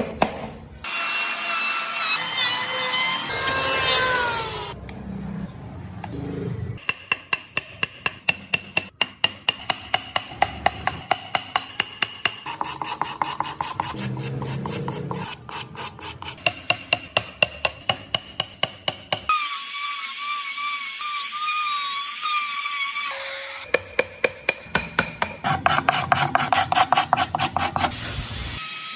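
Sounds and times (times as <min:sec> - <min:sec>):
rasp filing wood: 0:12.5 - 0:17.0, 0:25.4 - 0:27.9.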